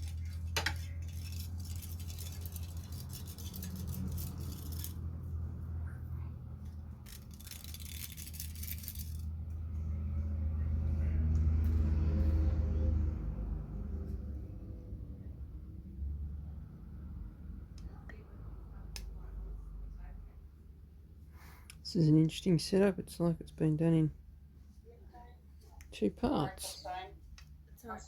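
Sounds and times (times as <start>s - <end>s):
hand tools scratching and rattling: 0.0s - 5.0s, 7.0s - 9.3s.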